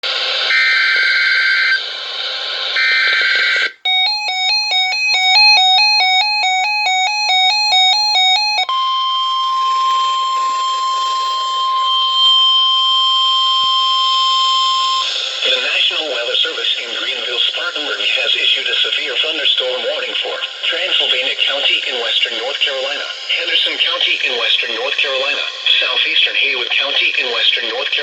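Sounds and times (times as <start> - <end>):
harsh buzzing data bursts: 0.5 - 1.9.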